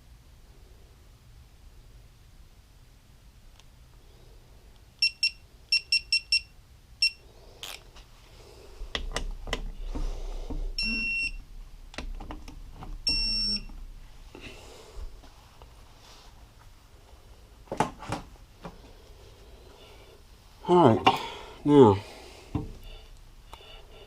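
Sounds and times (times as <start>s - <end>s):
electronic beeps: 10.8s - 11.4s, 13.0s - 13.7s.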